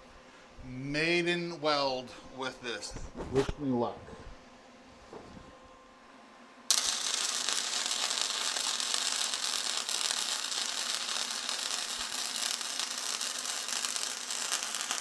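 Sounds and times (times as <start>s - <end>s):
welding arc crackling: 6.7s - 15.0s.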